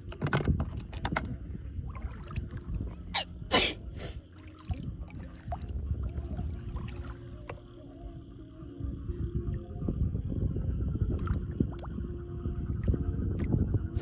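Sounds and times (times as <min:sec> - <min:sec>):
lake water splashing: 0:01.8 - 0:07.8
low rumble: 0:08.7 - 0:14.0.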